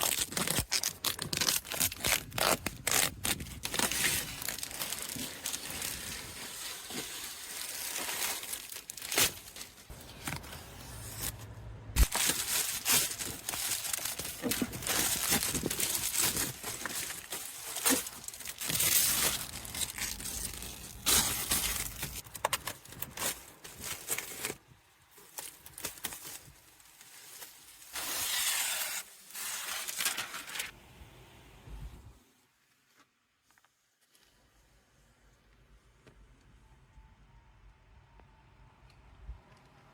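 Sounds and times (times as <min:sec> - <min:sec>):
plastic wrapping tearing and crumpling: 0:00.0 - 0:10.0, 0:12.0 - 0:30.7.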